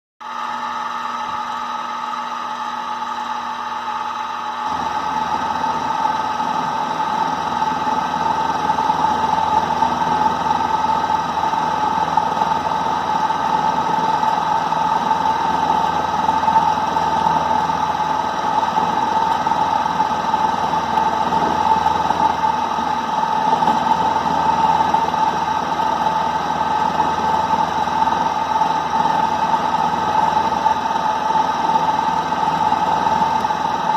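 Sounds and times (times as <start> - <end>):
milling machine whining: 0.2 - 33.9.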